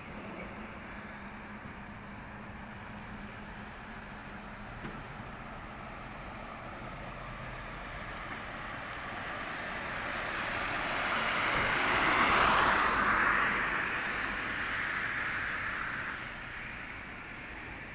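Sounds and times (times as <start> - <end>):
vehicle passing by: 10.0 - 16.0.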